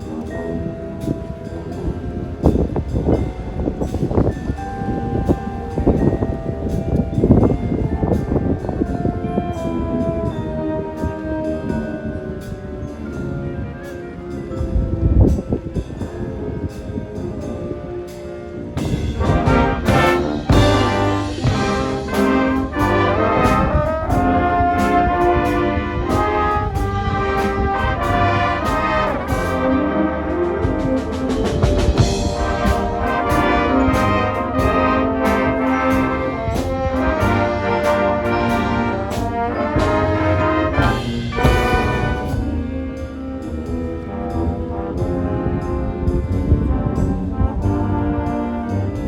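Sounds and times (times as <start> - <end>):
brass melody: 0.0 - 49.0
marching percussion beat: 18.8 - 49.0.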